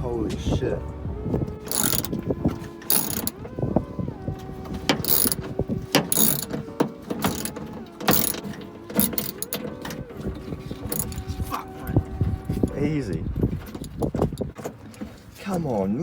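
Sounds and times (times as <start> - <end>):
ratchet wrench clicking: 1.7 - 2.2, 2.9 - 3.4, 4.9 - 5.4, 6.0 - 6.5, 7.2 - 7.5, 8.1 - 8.4, 9.0 - 9.6, 10.9 - 11.2.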